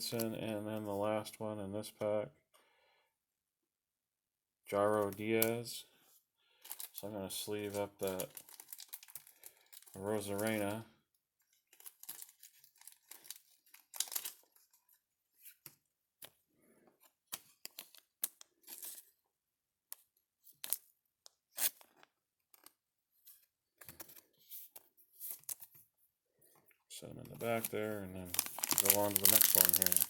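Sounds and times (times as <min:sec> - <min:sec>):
plastic sleeves crinkling: 0:06.6 - 0:10.8, 0:11.6 - 0:15.7, 0:27.4 - 0:30.0.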